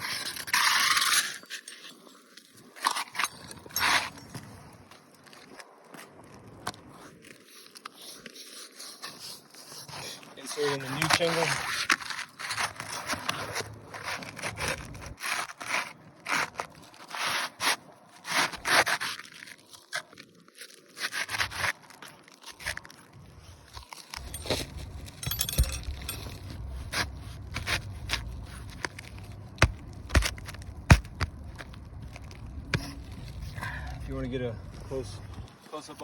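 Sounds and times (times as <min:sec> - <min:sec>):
roof shingle scraping: 0:08.5 - 0:20.2.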